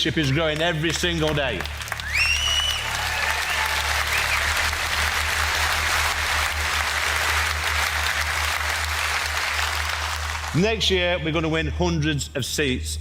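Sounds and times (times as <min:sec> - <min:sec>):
audience applauding: 0:00.0 - 0:10.8
high rising whoop: 0:02.0 - 0:04.5.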